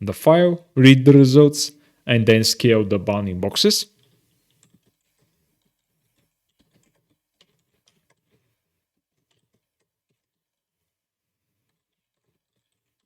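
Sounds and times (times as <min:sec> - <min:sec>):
faint keyboard typing: 0:04.0 - 0:10.6, 0:11.6 - 0:13.0.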